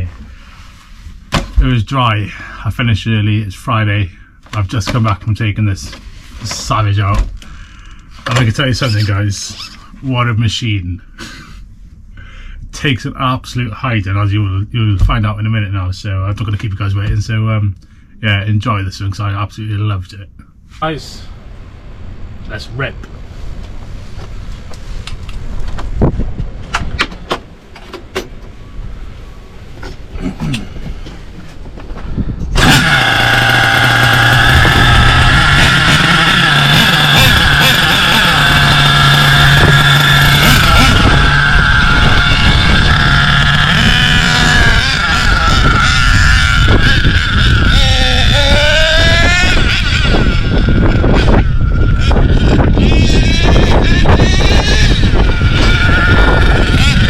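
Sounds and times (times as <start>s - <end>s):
low rumble: 5.7s - 57.0s
model car nitro engine running: 32.6s - 57.0s.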